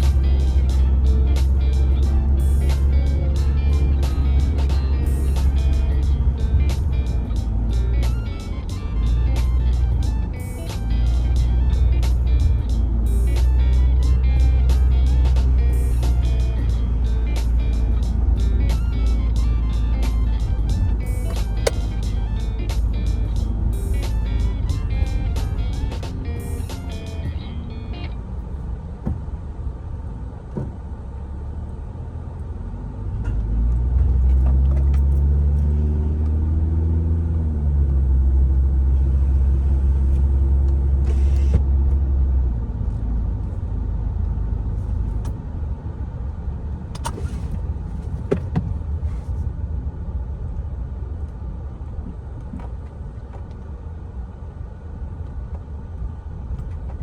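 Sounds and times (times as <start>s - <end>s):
car engine accelerating: 0.0s - 54.2s.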